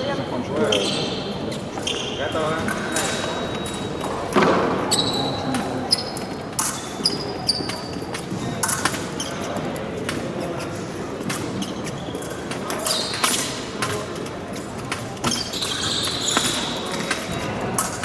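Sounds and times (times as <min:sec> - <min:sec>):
fencing blades clicking and clashing: 0:05.5 - 0:10.3, 0:11.2 - 0:18.0.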